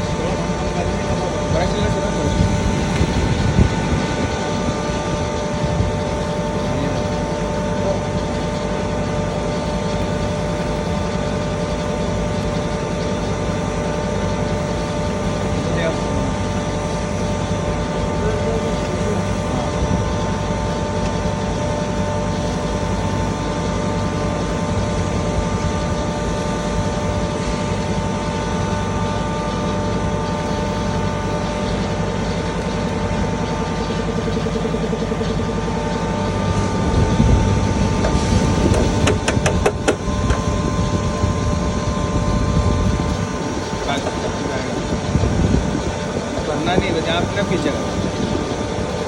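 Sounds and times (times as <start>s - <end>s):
grinder humming and whirring: 0.0s - 49.0s.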